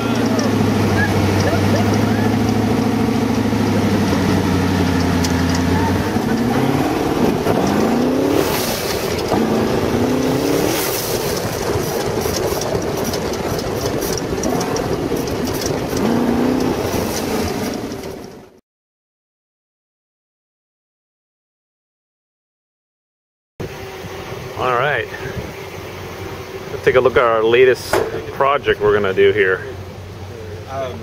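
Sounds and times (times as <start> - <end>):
engine revving: 0.0 - 18.5
constant rushing noise: 0.0 - 18.6.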